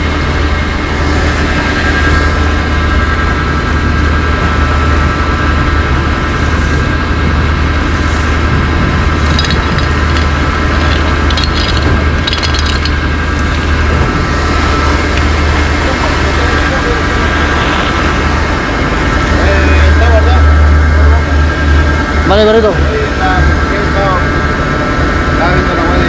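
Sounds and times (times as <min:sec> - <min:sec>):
engine running steadily: 0:00.0 - 0:26.0
light metallic clinks: 0:09.2 - 0:13.8.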